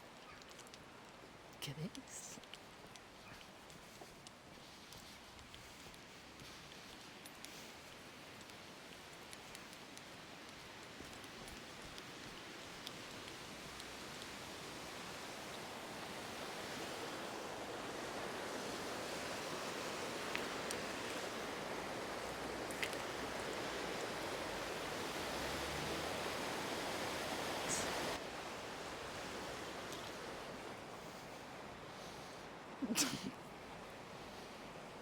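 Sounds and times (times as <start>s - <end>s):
faint clicks: 0.1s - 14.4s.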